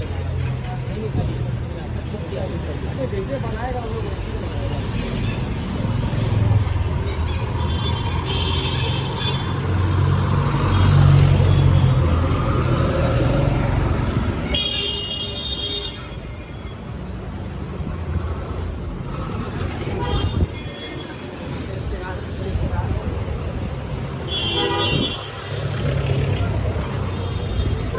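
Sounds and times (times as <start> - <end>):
vehicle horns honking: 7.6 - 9.6, 14.5 - 16.2, 19.9 - 21.1, 24.3 - 25.4.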